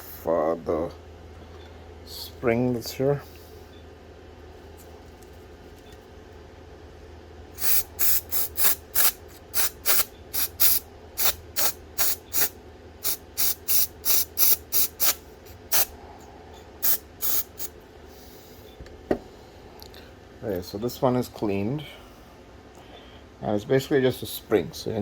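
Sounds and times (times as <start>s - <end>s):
aerosol can spraying: 7.6s - 15.9s, 16.8s - 17.7s.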